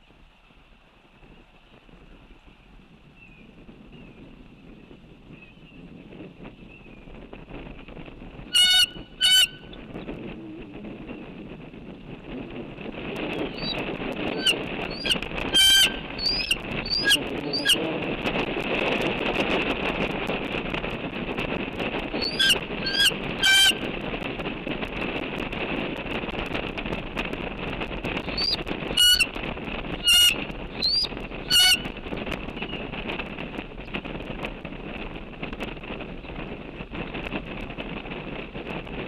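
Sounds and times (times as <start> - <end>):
wind noise: 0.0 - 39.0
bird calls rising notes: 13.3 - 13.8, 14.4 - 17.8, 22.2 - 23.7, 30.0 - 31.8.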